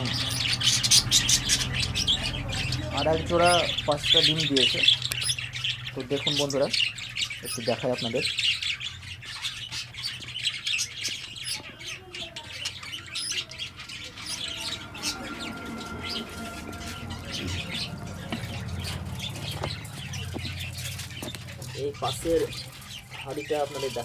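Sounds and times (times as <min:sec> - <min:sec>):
budgerigars chirping and squawking: 0:00.0 - 0:24.0
low steady hum: 0:13.1 - 0:24.0.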